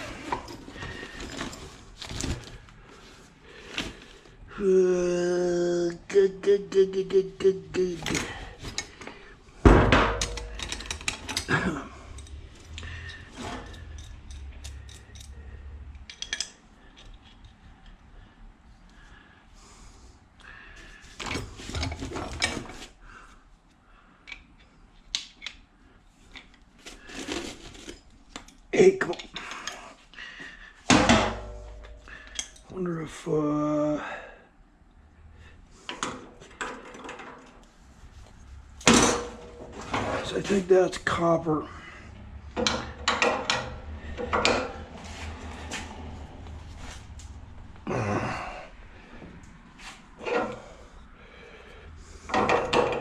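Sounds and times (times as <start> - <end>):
metal scrap and tools clinking: 10.1 - 17.4, 38.8 - 40.7.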